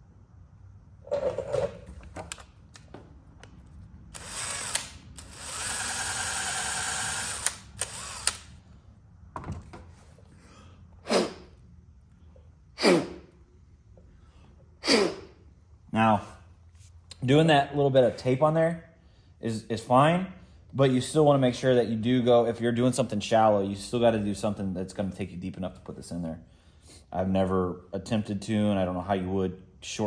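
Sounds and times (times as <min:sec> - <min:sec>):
power drill drilling: 0:04.2 - 0:08.4.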